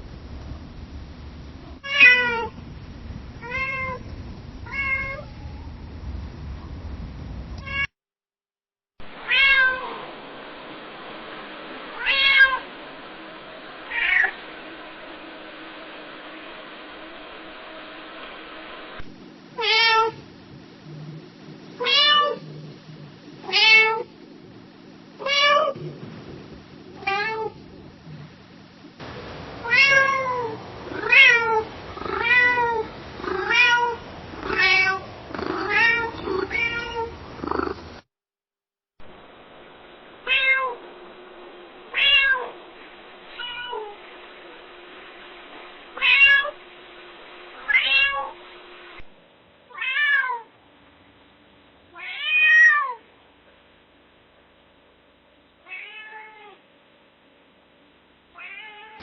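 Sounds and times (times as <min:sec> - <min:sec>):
cat meowing: 0:01.8 - 0:02.6, 0:03.4 - 0:04.0, 0:04.6 - 0:05.6, 0:07.6 - 0:07.9, 0:09.2 - 0:10.0, 0:12.0 - 0:12.6, 0:13.9 - 0:14.4, 0:19.6 - 0:20.2, 0:23.4 - 0:24.1, 0:27.0 - 0:27.6, 0:29.6 - 0:37.8, 0:40.3 - 0:40.8, 0:41.9 - 0:42.6, 0:43.4 - 0:44.0, 0:47.6 - 0:48.4, 0:49.7 - 0:50.5, 0:52.0 - 0:53.0, 0:55.6 - 0:56.6, 0:58.4 - 0:59.0.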